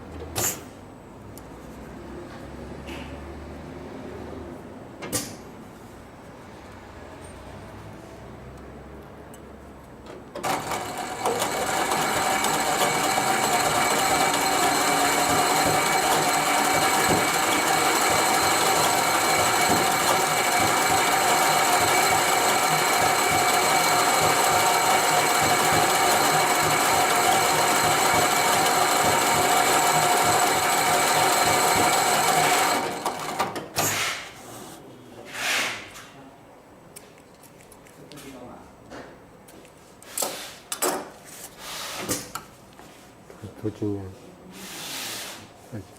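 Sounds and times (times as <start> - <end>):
sewing machine running: 10.4 - 33.6.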